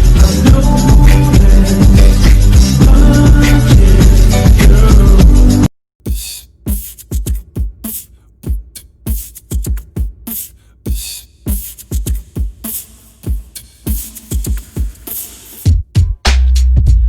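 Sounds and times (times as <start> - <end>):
bass-heavy drum beat: 0.0 - 17.0.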